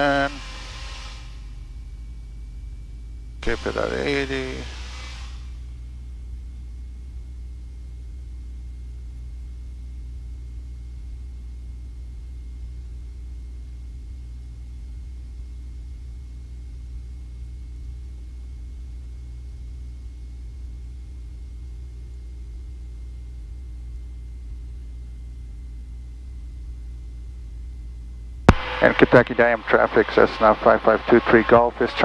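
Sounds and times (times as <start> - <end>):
aircraft engine droning: 0.0 - 9.7, 21.9 - 32.0.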